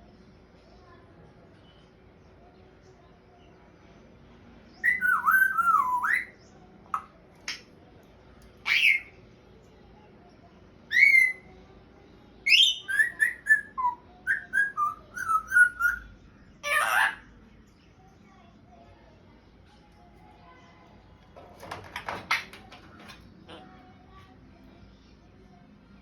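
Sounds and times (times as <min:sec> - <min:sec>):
parrot whistling: 0:12.6 - 0:16.0.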